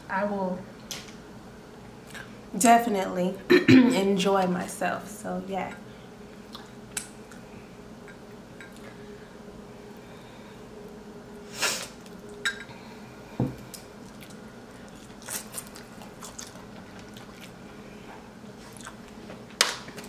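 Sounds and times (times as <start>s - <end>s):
chewing and wet squishing: 6.4s - 7.5s, 13.7s - 19.3s.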